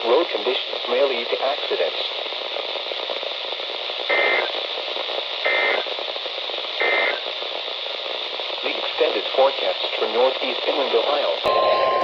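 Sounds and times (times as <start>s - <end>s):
radio hiss: 0.0s - 12.0s
short digital data bursts: 4.1s - 4.6s, 5.4s - 5.9s, 6.8s - 7.3s.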